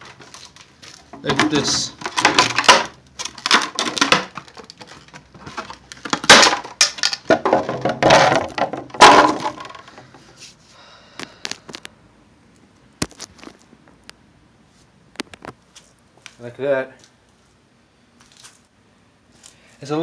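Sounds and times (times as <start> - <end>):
broken plastic pieces clattering: 0.0 - 10.0
sledgehammer smashing plastic: 0.0 - 10.0.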